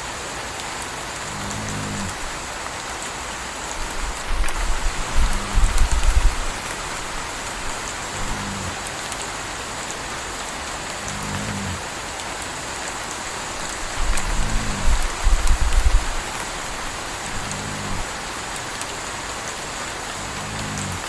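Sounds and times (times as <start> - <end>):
steady rain: 0.0 - 21.0
puppy snoring softly: 1.2 - 2.4, 3.8 - 8.9, 11.0 - 11.9, 13.7 - 16.4, 17.2 - 18.1, 20.2 - 21.0
deep low rumble: 3.8 - 8.8, 13.6 - 18.1.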